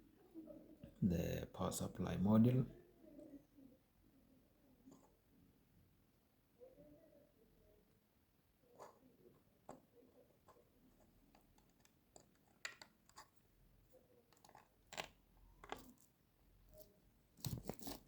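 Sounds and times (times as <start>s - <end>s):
plastic parts clicking and knocking: 11.3s - 13.4s, 14.3s - 16.1s.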